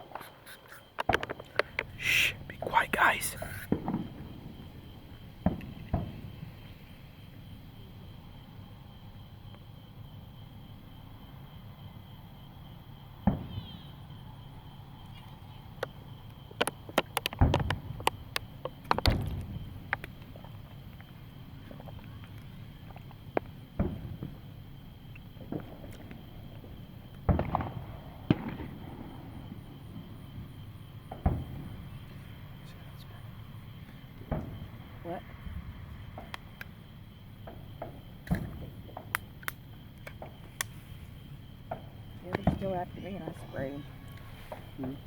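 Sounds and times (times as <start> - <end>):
crickets and insects chirping: 0.0 - 45.0
sharp firework crack: 27.3 - 29.2
fireworks bangs: 27.3 - 29.4.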